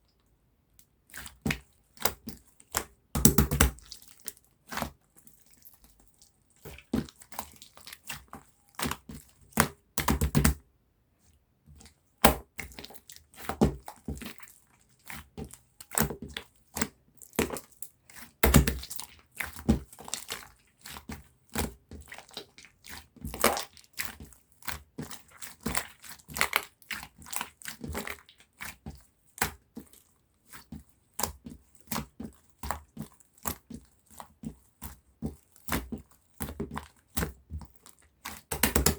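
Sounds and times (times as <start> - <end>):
slime being squished: 1.1 - 5.8, 35.3 - 38.9.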